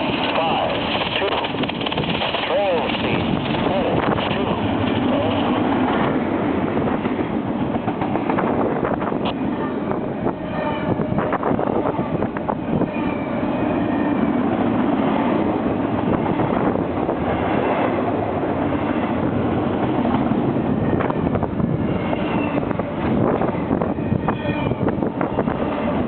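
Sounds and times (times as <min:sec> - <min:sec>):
train clicks: 0:00.0 - 0:09.5
freight train wheels rumbling: 0:00.0 - 0:26.0.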